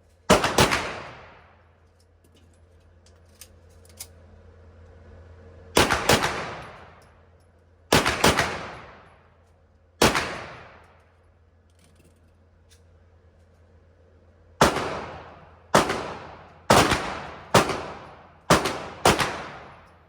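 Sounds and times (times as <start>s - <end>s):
pistol shots echoing: 0.3s - 1.5s, 5.8s - 7.0s, 7.9s - 9.1s, 10.0s - 10.8s, 14.6s - 19.9s.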